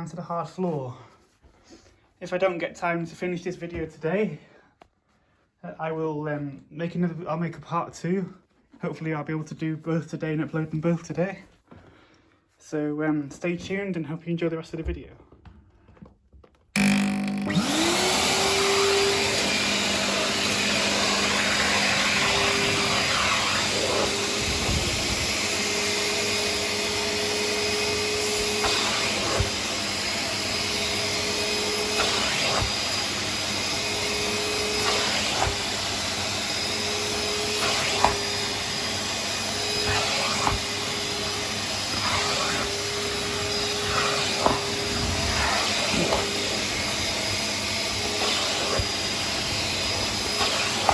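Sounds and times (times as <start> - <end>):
vacuum cleaner motor running: 16.8 - 50.9
vacuum whining tone: 16.8 - 50.9.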